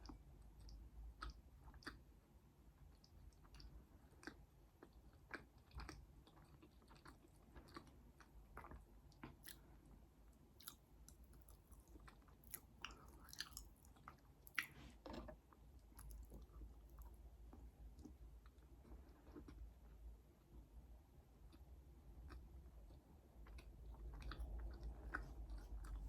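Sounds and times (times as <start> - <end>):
person chewing food: 0.0 - 2.2, 2.8 - 20.1, 21.4 - 26.0.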